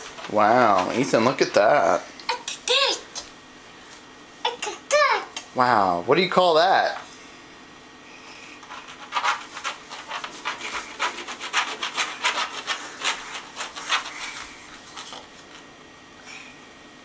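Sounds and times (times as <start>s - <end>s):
marker scribbling on a surface: 8.7s - 14.2s.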